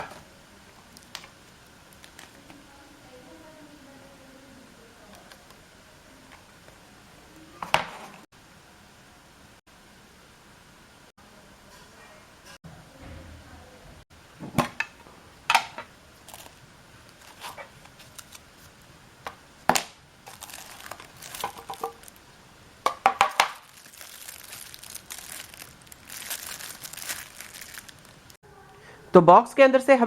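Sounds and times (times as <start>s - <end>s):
paper and plastic crinkling: 1.9s - 2.5s, 16.2s - 18.8s, 20.2s - 22.3s, 23.2s - 28.4s.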